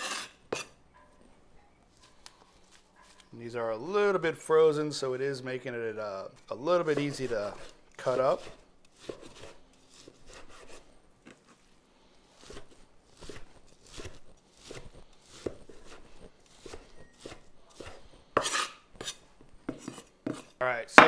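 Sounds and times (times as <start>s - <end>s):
knife chopping meat: 6.9s - 10.8s, 12.4s - 20.6s.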